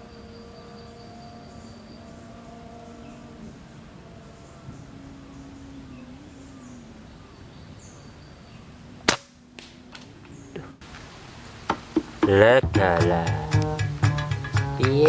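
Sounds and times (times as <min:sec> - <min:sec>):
air rifle shot crack: 0:09.1 - 0:09.4.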